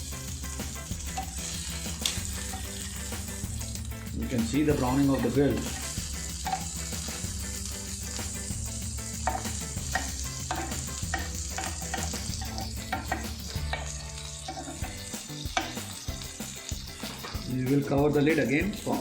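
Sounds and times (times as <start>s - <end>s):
food sizzling on a griddle: 0.0s - 19.0s.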